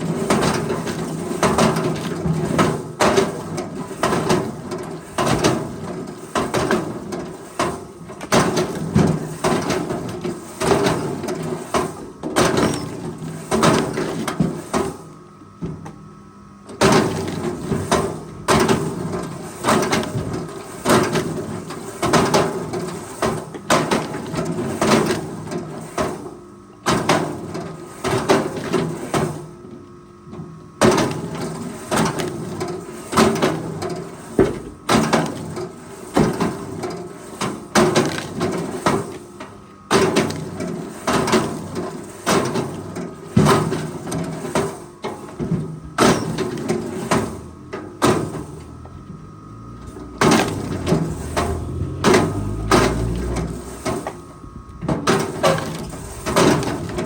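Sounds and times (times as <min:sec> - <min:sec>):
forestry machine engine running: 0:45.0 - 0:57.0.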